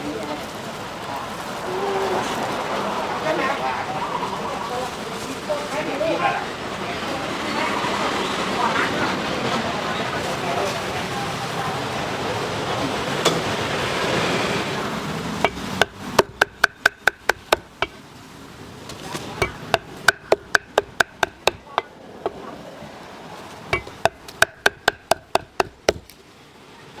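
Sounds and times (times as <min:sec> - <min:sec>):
cleaver chopping on wooden block: 0:15.4 - 0:18.0, 0:18.9 - 0:22.4, 0:23.7 - 0:26.2.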